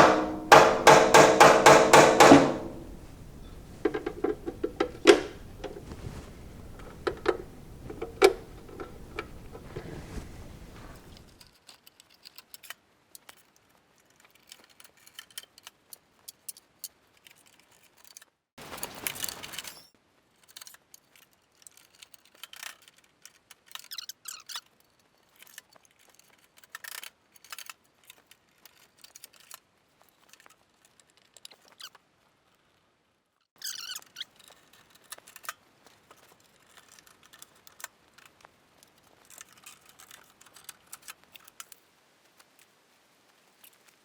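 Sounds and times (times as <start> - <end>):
metal drawers clicking and rattling: 0.0 - 11.3.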